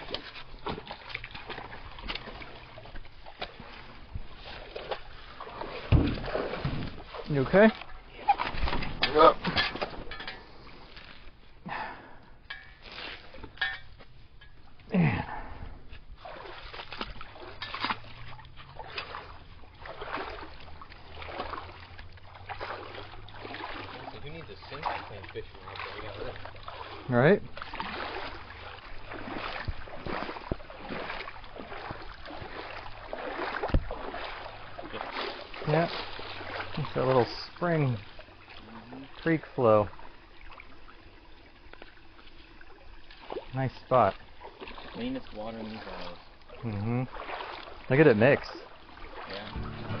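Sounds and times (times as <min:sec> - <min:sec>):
water sloshing and splashing: 0:00.0 - 0:50.0
heavy thump: 0:05.9 - 0:07.0.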